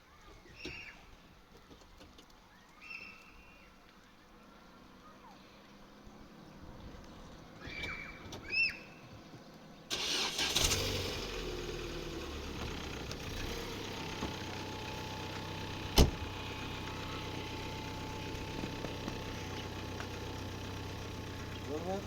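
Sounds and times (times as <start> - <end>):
engine running: 9.9 - 22.0.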